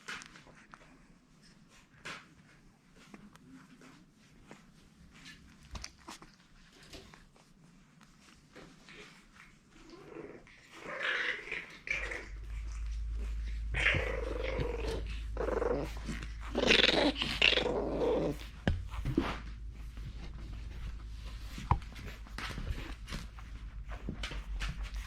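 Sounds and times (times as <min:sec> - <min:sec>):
puppy growling: 0:08.2 - 0:25.0.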